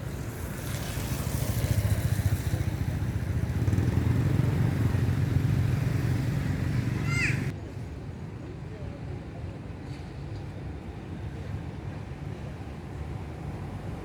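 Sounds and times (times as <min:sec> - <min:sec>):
vehicle engine rumbling: 0:00.0 - 0:07.5.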